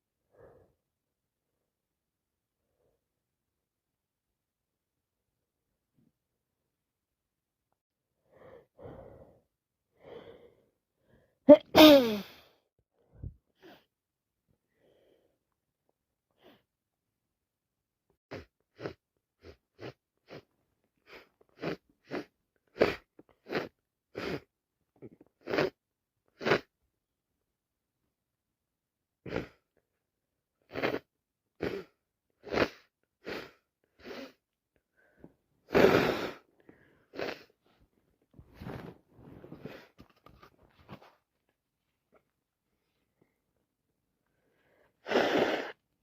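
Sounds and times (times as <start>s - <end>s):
person sneezing: 11.5s - 12.5s, 35.7s - 36.4s, 45.0s - 45.8s.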